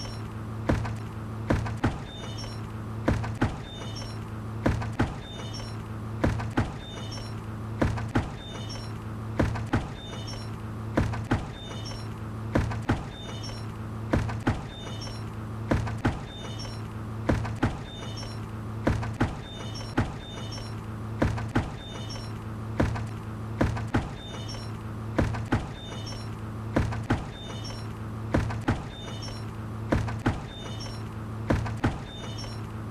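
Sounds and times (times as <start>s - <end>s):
short high squeaks: 0.0s - 0.3s, 2.0s - 2.7s, 3.6s - 4.3s, 5.1s - 5.8s, 6.7s - 7.4s, 8.3s - 9.0s, 9.9s - 10.6s, 11.4s - 12.2s, 13.0s - 13.7s, 14.6s - 15.3s, 16.2s - 16.9s, 17.7s - 18.5s, 19.4s - 20.9s, 21.7s - 22.4s, 24.1s - 24.8s, 25.6s - 26.4s, 27.2s - 28.0s, 28.7s - 32.8s
steady low hum: 0.0s - 32.9s.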